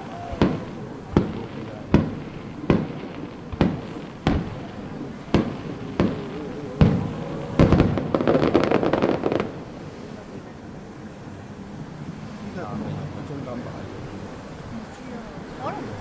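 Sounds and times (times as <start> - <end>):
fireworks bangs: 0.0 - 11.1
fireworks crackling: 0.0 - 16.0.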